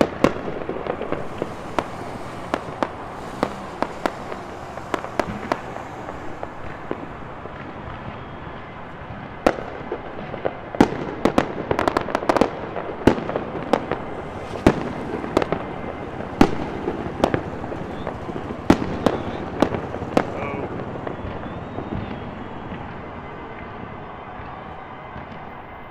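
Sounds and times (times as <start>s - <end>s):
firecrackers banging: 0.0s - 25.8s
crowd and street noise: 0.0s - 25.9s.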